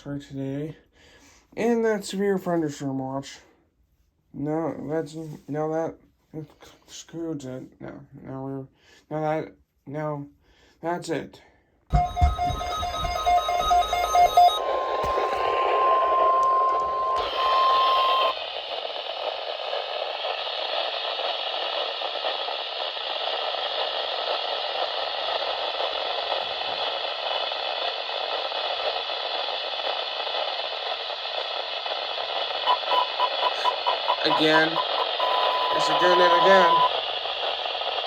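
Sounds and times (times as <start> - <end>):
steady alert tone: 11.9 - 18.3
radio static hiss: 11.9 - 38.0.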